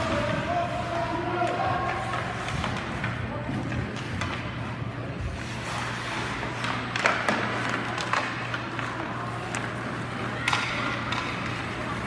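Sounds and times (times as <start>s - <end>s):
sticks and puck knocking: 6.6s - 11.8s.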